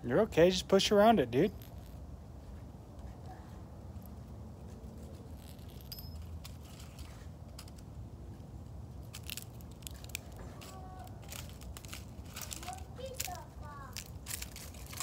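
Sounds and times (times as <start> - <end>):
toy lawnmower crackling: 9.1 - 15.0.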